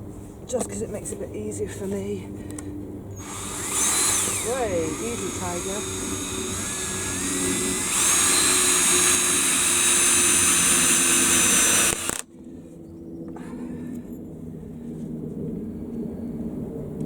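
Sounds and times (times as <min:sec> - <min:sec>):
power drill driving screw into wood: 0:03.2 - 0:12.2.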